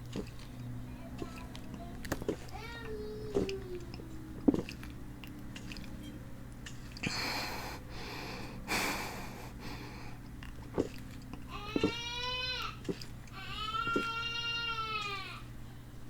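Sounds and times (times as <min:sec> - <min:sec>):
person breathing hard: 0:06.9 - 0:11.0.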